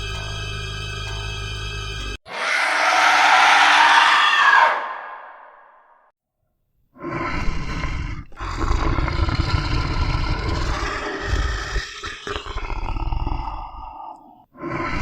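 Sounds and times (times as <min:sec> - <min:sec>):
deep monster roar: 0:02.3 - 0:05.8, 0:07.0 - 0:15.0.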